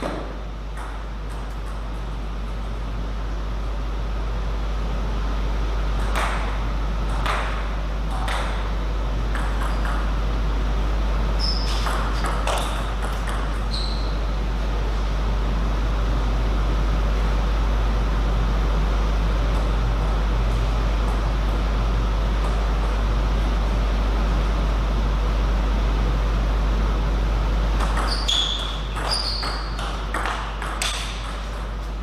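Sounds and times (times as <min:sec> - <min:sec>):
table tennis ball hits: 0:00.0 - 0:02.1, 0:06.0 - 0:10.2, 0:11.6 - 0:13.7, 0:27.8 - 0:31.8
steady low hum: 0:00.0 - 0:32.0
short high squeaks: 0:11.4 - 0:12.9, 0:13.6 - 0:14.3, 0:27.9 - 0:29.8.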